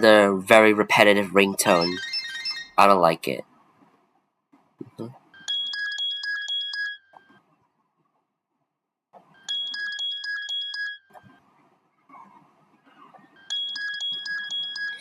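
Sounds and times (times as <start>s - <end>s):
mobile phone ringtone: 1.7s - 2.8s, 5.4s - 7.4s, 9.4s - 11.4s, 13.4s - 15.0s.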